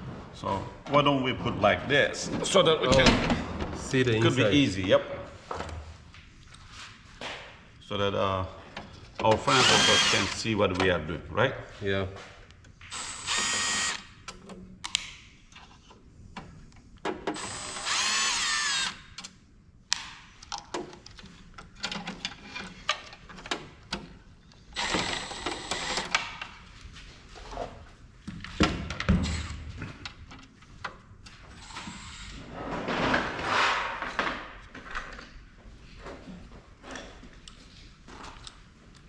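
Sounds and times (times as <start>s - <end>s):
power drill spinning: 9.4s - 10.4s, 12.9s - 14.1s, 17.4s - 19.0s, 24.8s - 26.1s, 31.6s - 32.4s
clicks and clatter of metal parts: 20.4s - 24.2s.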